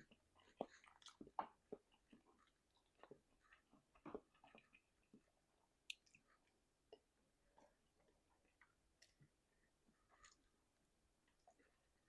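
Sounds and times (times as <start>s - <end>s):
soft wet chewing: 0.0s - 12.0s.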